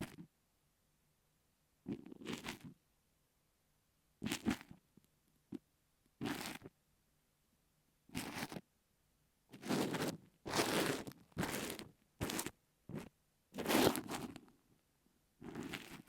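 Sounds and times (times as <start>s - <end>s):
ear pick scratching sand: 9.6s - 12.5s, 13.6s - 14.4s.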